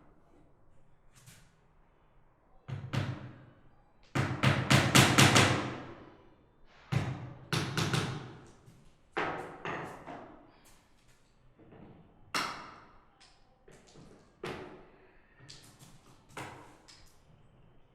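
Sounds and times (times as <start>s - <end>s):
hammer driving nails into wood: 4.2s - 5.8s.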